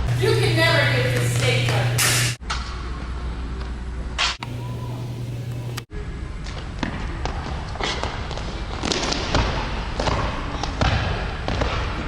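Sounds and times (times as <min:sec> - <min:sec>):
steady background noise: 0:00.0 - 0:02.4.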